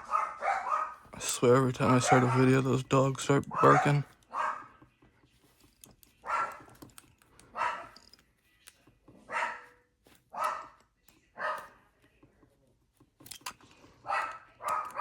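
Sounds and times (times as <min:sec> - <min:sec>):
dogs barking: 0:00.0 - 0:04.9, 0:06.2 - 0:06.8, 0:07.5 - 0:08.0, 0:09.2 - 0:11.8, 0:14.0 - 0:15.0.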